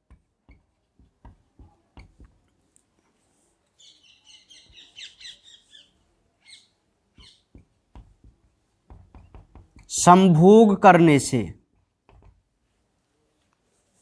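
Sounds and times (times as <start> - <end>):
small birds chirping: 3.7 - 7.6.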